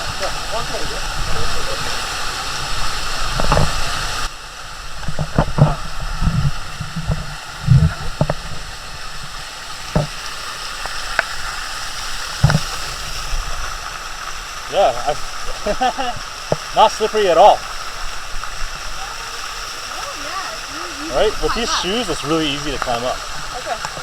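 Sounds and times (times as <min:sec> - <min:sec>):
water splashing over rock: 0:00.0 - 0:24.0.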